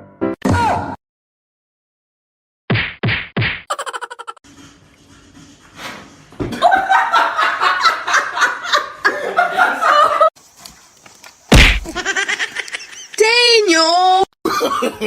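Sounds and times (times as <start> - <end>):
people laughing: 3.7 - 4.4, 6.5 - 10.4, 11.9 - 13.2, 14.4 - 15.0
loud thump: 11.5 - 12.0.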